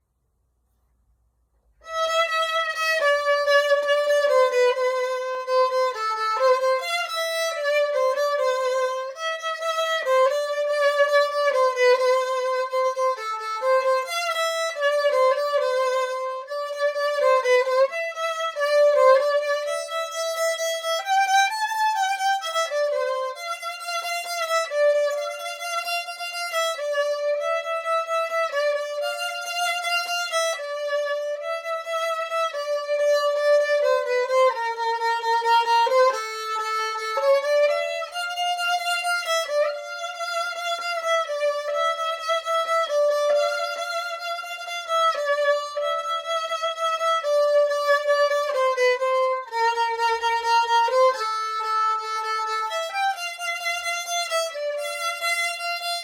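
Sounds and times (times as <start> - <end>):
solo violin melody: 1.8 - 56.0.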